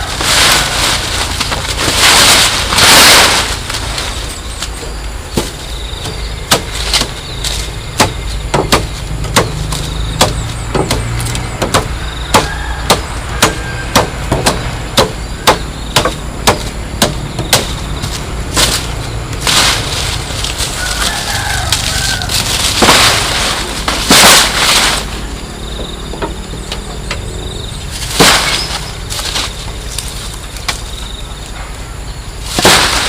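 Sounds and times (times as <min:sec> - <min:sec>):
steady low hum: 0:00.0 - 0:33.0
sharp knocks: 0:05.3 - 0:07.2, 0:08.0 - 0:17.8.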